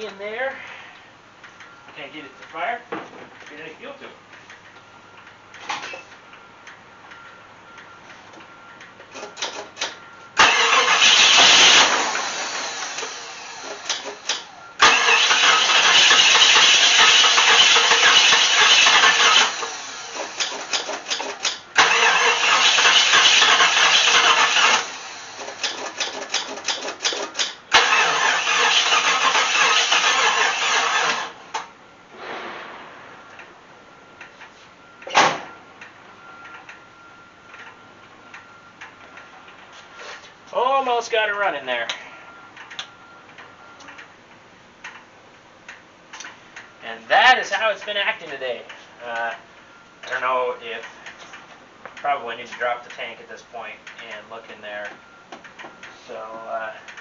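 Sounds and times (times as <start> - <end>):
starter cranking engine: 9.2 - 31.4.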